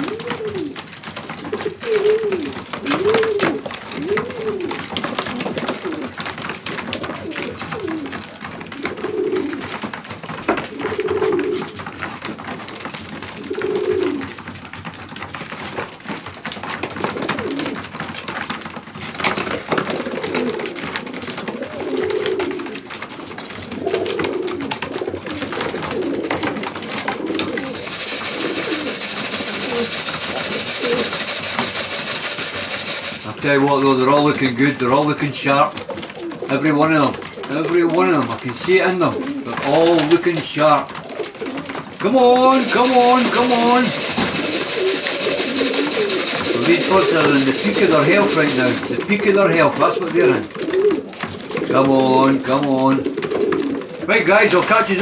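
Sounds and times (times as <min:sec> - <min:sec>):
pigeons cooing: 0:00.0 - 0:55.0
steady hiss: 0:27.7 - 0:33.4.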